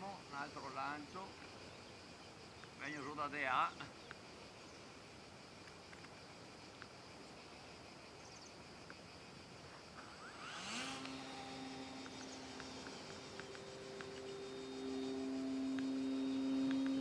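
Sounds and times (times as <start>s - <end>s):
electric motor and propeller whine: 9.8s - 17.0s.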